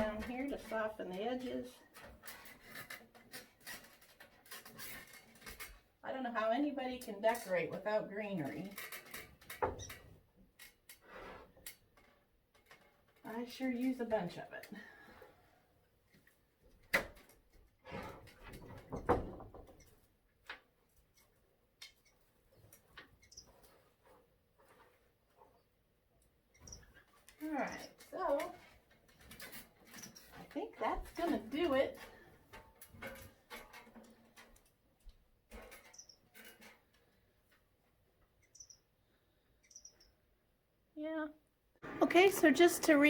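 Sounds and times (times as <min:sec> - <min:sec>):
rustling and handling noises: 0:19.8 - 0:38.4
small birds chirping: 0:23.2 - 0:23.6, 0:27.6 - 0:28.0, 0:35.9 - 0:36.3, 0:38.4 - 0:40.3.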